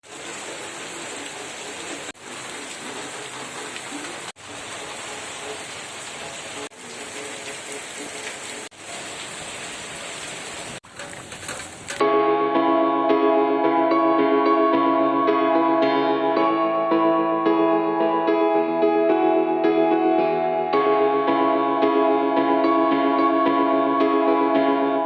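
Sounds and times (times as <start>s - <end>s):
rain falling: 0.0s - 12.0s.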